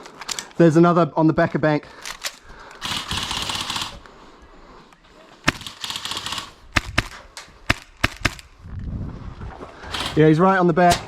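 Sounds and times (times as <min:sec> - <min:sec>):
airsoft gun bursts: 0:02.8 - 0:04.0, 0:05.4 - 0:08.4.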